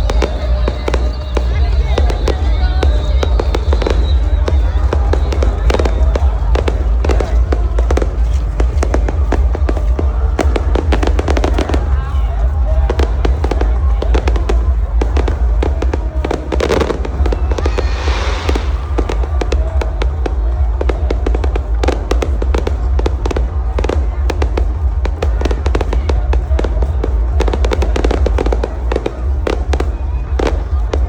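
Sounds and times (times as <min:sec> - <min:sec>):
fireworks bangs and crackles: 0:00.0 - 0:31.0
hissing crackle: 0:15.5 - 0:21.3
deep rumble: 0:16.3 - 0:21.8.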